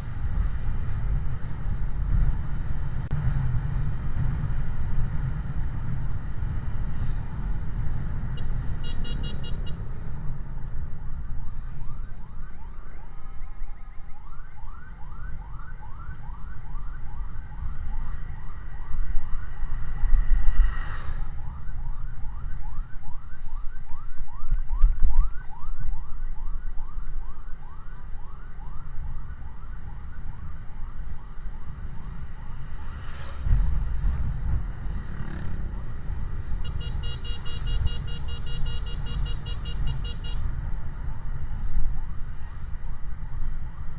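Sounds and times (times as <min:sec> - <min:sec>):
road and wind rumble: 0:00.0 - 0:43.9
emergency siren in fast yelp: 0:11.1 - 0:19.7, 0:21.3 - 0:32.8, 0:40.8 - 0:43.9.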